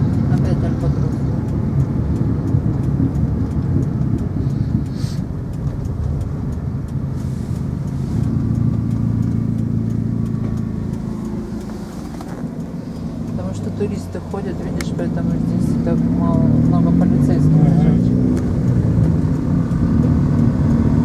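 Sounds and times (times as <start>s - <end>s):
car engine hum: 0.0s - 21.0s
road noise inside car: 0.0s - 21.0s.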